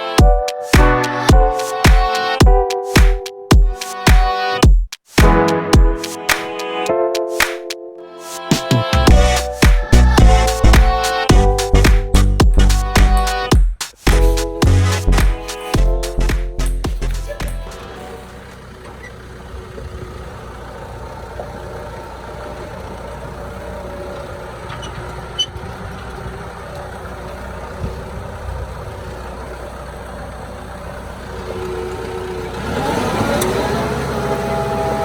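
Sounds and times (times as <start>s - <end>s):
vehicle engine running: 9.1s - 35.0s.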